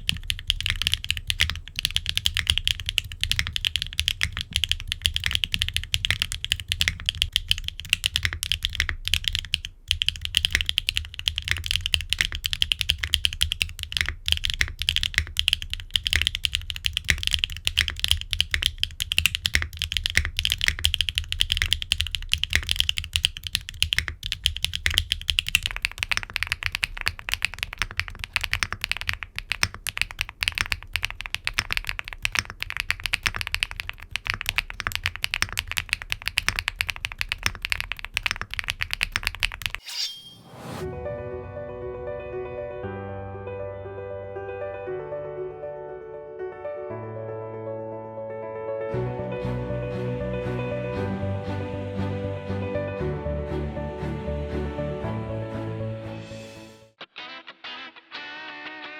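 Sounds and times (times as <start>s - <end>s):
fast typing on mechanical keyboard: 0.0s - 39.8s.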